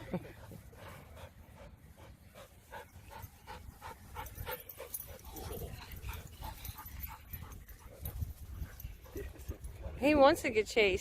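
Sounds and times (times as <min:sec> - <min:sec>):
dog panting rapidly: 0:00.2 - 0:10.5.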